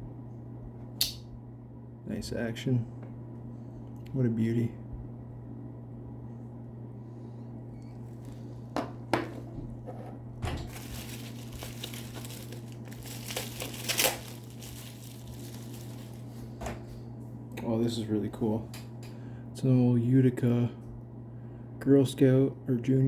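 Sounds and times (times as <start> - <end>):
steady low hum: 0.0 - 23.0
wrapping crinkling: 7.9 - 8.6, 10.6 - 16.6.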